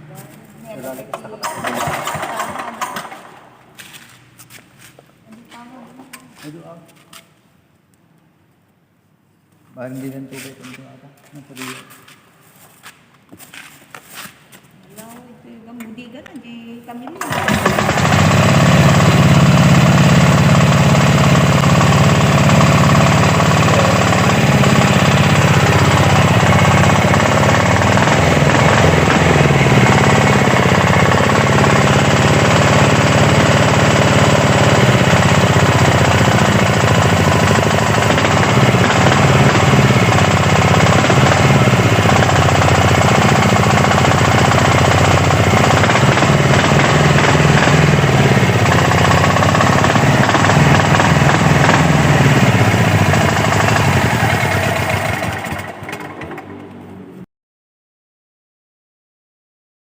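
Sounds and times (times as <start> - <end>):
single-cylinder engine running: 0.0 - 6.6, 17.0 - 57.2.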